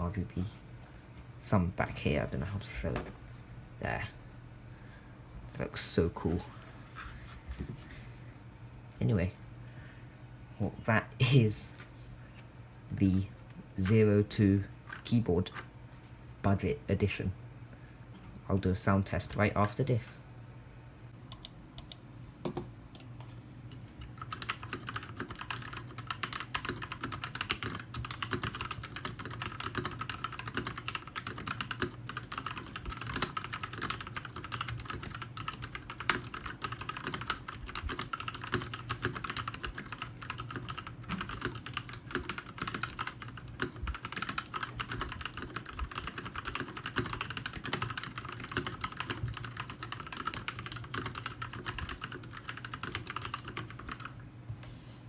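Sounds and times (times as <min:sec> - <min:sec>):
fast typing on mechanical keyboard: 0:24.1 - 0:54.2.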